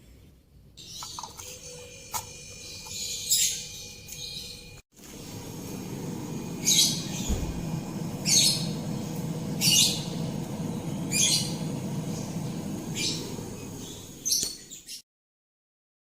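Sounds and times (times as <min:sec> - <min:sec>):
steady low hum: 0:04.6 - 0:14.3.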